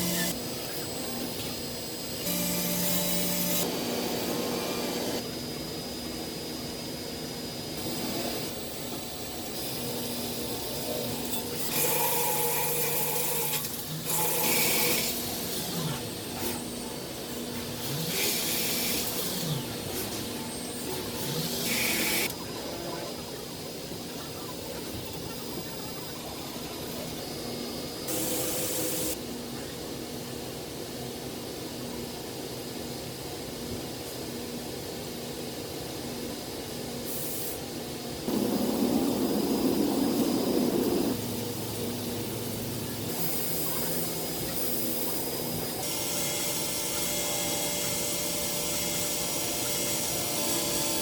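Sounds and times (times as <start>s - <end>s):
machine tool motor whine: 0.0s - 29.2s.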